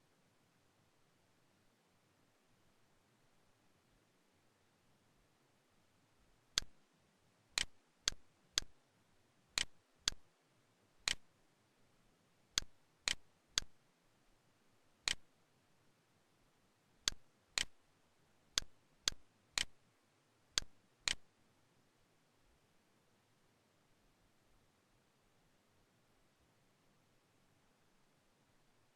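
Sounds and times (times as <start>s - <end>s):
mouse clicks: 6.6s - 6.8s, 7.6s - 8.8s, 9.6s - 10.2s, 11.0s - 11.3s, 12.6s - 13.8s, 15.0s - 15.3s, 17.0s - 17.8s, 18.6s - 19.8s, 20.6s - 21.2s.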